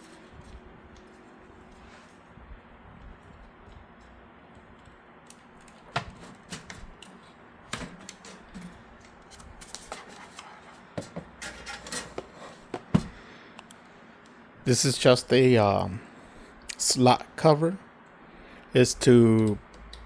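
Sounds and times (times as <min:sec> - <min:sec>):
computer case hardware clicking: 0:05.3 - 0:13.2.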